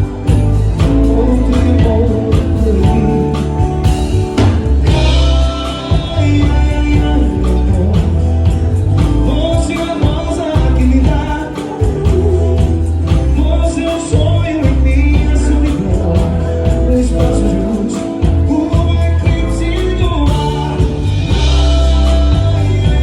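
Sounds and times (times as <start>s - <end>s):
person singing with band: 0.0s - 23.0s.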